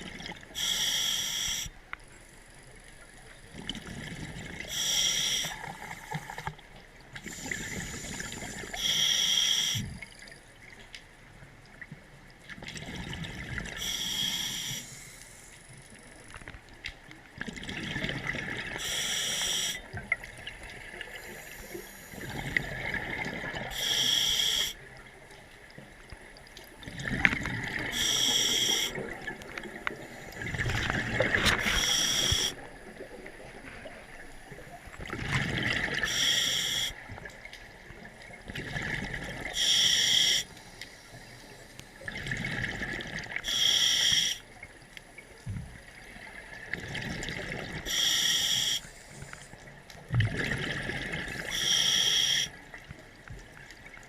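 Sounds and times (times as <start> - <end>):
hissing inhale through regulator: 0.6 - 1.7, 4.7 - 6.5, 7.2 - 10.0, 13.8 - 15.8, 18.8 - 19.9, 21.1 - 22.8, 23.6 - 24.8, 27.9 - 29.0, 31.3 - 32.7, 36.0 - 37.0, 39.5 - 42.0, 43.4 - 44.5, 47.8 - 49.6, 51.3 - 52.6
exhaled bubbles gurgling: 3.4 - 6.6, 12.6 - 14.8, 17.3 - 24.3, 26.2 - 40.4, 42.0 - 43.6, 45.8 - 48.8, 49.7 - 54.0.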